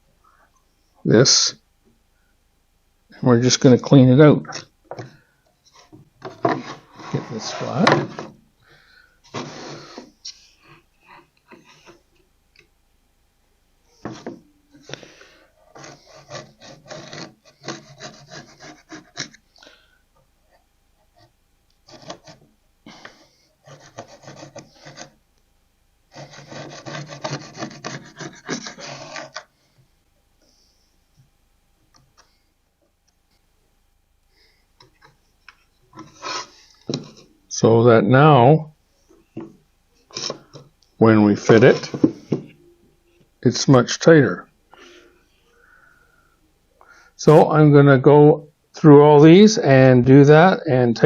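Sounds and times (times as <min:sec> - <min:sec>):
hand tool rasping on plywood: 0:15.7 - 0:19.4, 0:21.9 - 0:22.4, 0:23.6 - 0:25.2, 0:26.1 - 0:29.5.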